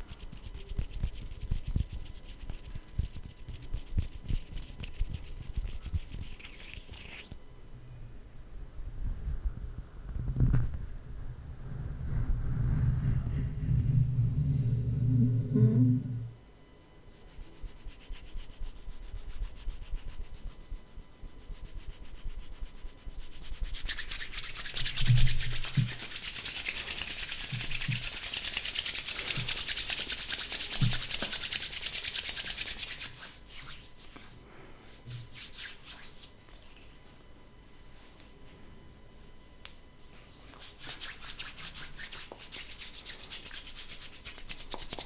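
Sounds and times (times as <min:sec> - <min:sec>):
hands rubbing together: 0:00.0 - 0:07.4, 0:22.9 - 0:37.1, 0:40.5 - 0:45.0
short low rumble: 0:11.2 - 0:16.4
soft low bumps: 0:11.8 - 0:16.4.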